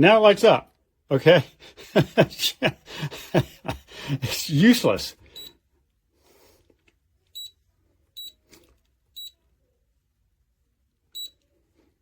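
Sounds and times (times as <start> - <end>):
keypad beeps: 9.2 - 9.4, 11.2 - 11.4.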